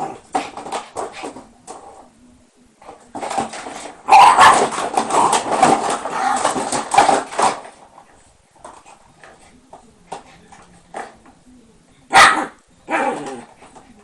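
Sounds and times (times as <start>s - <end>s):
dog barking: 4.1s - 4.7s, 12.1s - 13.2s.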